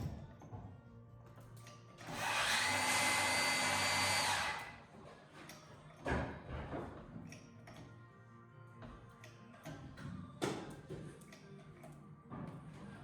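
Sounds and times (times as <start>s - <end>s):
power tool motor whine: 2.0s - 4.8s.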